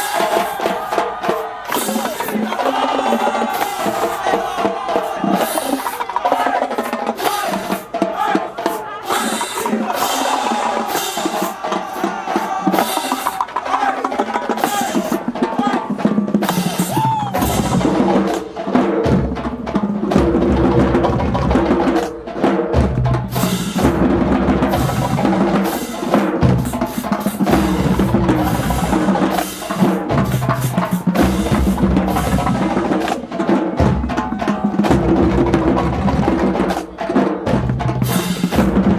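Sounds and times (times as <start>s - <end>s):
snare drum rolls: 0.0s - 38.9s
bass drums: 26.3s - 29.4s, 37.5s - 38.9s.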